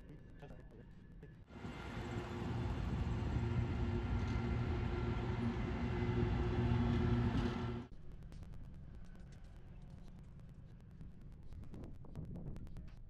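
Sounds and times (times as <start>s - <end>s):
heavy engine rumbling: 1.5s - 7.9s.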